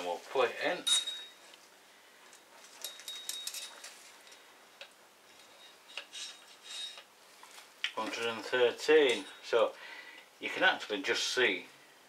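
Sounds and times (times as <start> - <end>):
small tools clicking and tapping: 2.3 - 8.3.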